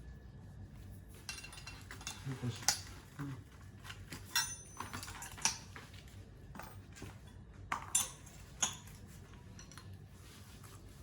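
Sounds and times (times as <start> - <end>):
metallic clinks and knocks: 1.2 - 3.0, 3.8 - 10.0.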